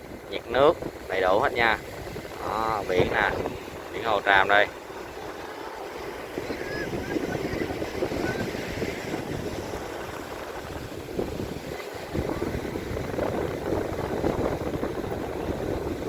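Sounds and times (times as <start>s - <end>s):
surf washing: 0.0s - 16.0s
wind buffeting microphone: 0.0s - 16.0s.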